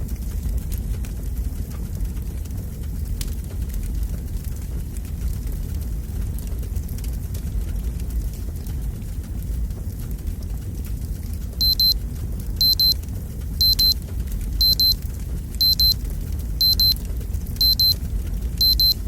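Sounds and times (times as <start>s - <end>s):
fireplace logs burning: 0.0s - 19.0s
timer alarm double beep: 11.6s - 12.0s, 12.6s - 13.0s, 13.6s - 14.0s, 14.6s - 15.0s, 15.6s - 16.0s, 16.6s - 17.0s, 17.6s - 18.0s, 18.6s - 19.0s.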